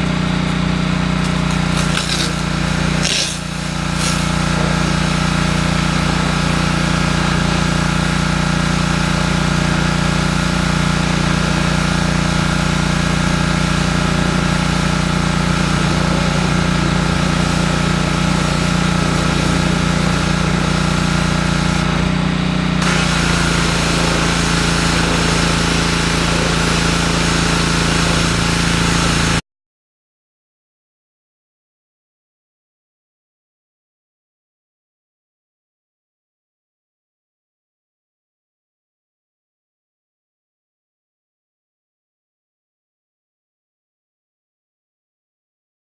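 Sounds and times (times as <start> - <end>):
pressure washer engine running: 0.0 - 29.4.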